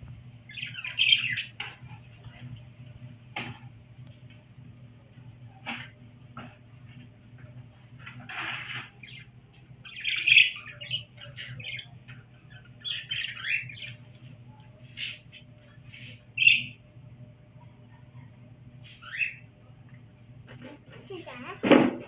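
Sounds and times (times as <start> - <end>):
parrots chirping and squawking: 0.5 - 2.0, 8.0 - 16.8, 18.8 - 21.7.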